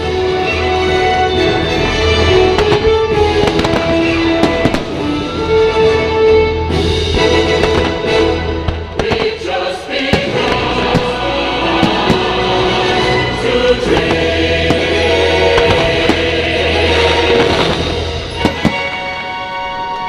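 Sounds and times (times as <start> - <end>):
orchestral music over loudspeakers: 0.0 - 20.0
firework bangs: 2.1 - 5.4, 7.0 - 13.2, 13.8 - 19.6
choir singing: 7.2 - 20.0.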